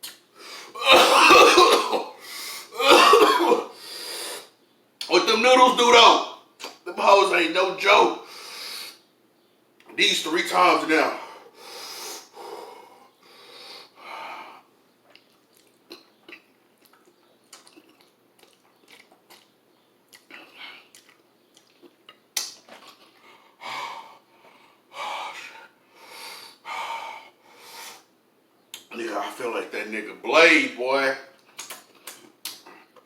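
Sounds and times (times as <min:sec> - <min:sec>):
hard wheezing breaths: 0:00.3 - 0:00.9, 0:02.2 - 0:02.9, 0:03.6 - 0:04.6, 0:08.2 - 0:09.0, 0:11.2 - 0:14.7, 0:23.1 - 0:28.1
person chewing: 0:15.1 - 0:23.2.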